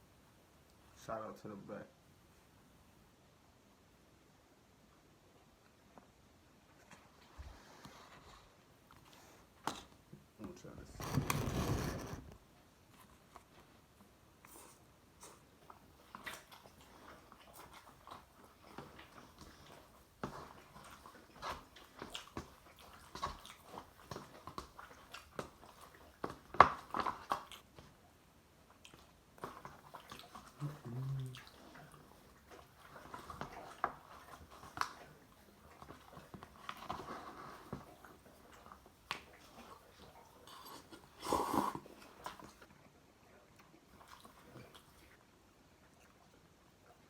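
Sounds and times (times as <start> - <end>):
person chewing noodles: 14.5 - 27.7, 28.7 - 47.0.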